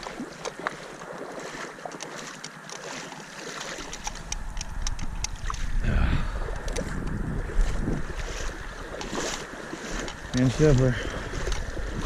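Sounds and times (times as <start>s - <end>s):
small clicks and rustles: 1.9s - 5.7s, 8.9s - 11.9s
wind buffeting microphone: 3.8s - 12.0s.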